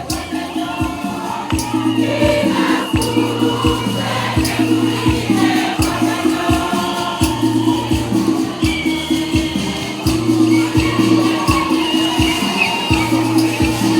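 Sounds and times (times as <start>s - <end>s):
choir singing a hymn: 0.0s - 13.9s
rattling hand percussion: 0.0s - 13.9s
steady drumbeat: 0.0s - 13.9s.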